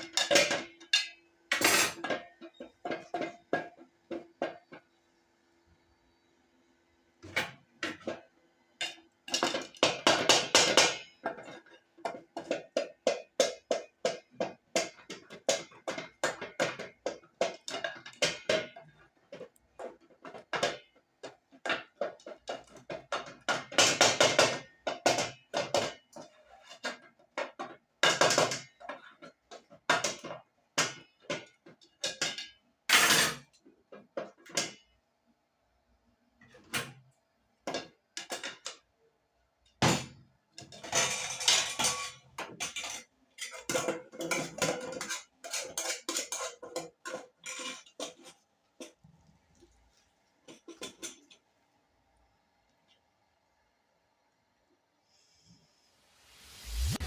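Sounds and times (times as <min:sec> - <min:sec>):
household things clattering: 0:00.0 - 0:04.9, 0:07.2 - 0:34.9, 0:39.8 - 0:49.0, 0:50.4 - 0:51.5.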